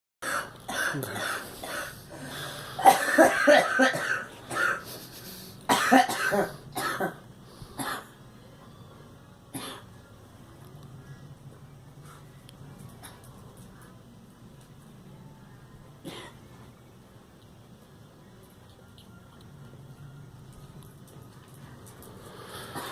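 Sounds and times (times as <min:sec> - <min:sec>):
girl coughing: 0:02.8 - 0:04.8, 0:05.7 - 0:07.2.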